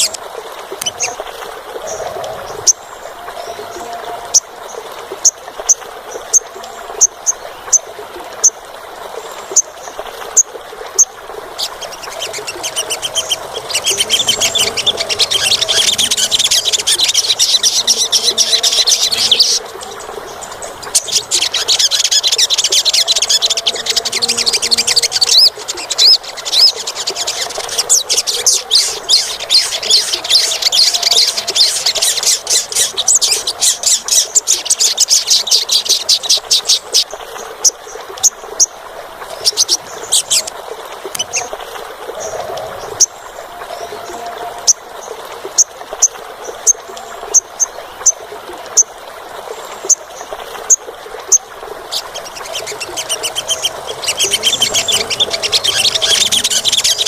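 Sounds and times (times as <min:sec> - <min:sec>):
bird chirping and trilling: 0:10.4 - 0:37.8, 0:50.7 - 0:57.0.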